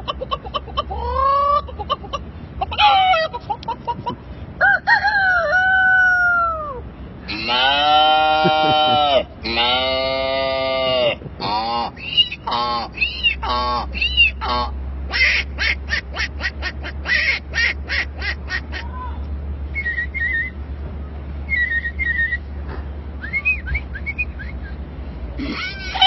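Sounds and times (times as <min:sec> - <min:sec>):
man imitating duck quacks: 0:07.3 - 0:18.9
whistled gliding notes: 0:19.7 - 0:20.6, 0:21.5 - 0:22.5, 0:23.2 - 0:24.8.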